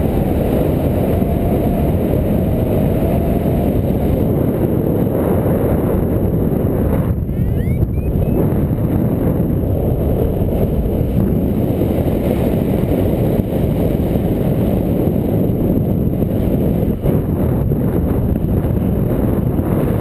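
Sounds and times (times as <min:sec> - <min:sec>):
wind rushing over microphone: 0:00.0 - 0:20.0.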